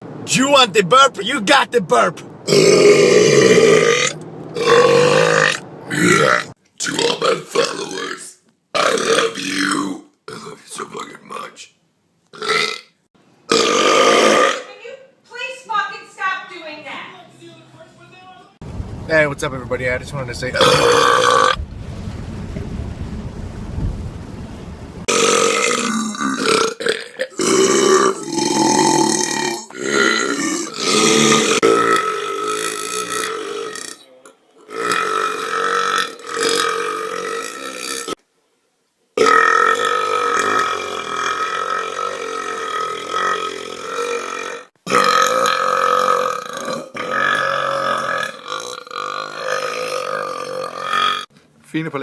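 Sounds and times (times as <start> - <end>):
men burping: 2.5 - 6.5, 13.5 - 14.6, 25.1 - 34.0, 34.6 - 38.2, 39.2 - 51.3.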